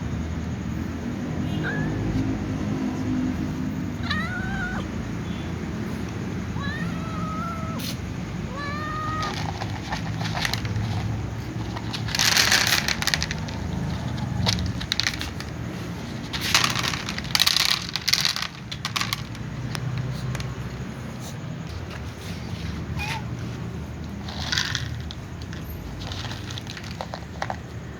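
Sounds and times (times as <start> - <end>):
cats crunching dry kibble: 6.1 - 21.0, 21.6 - 27.8.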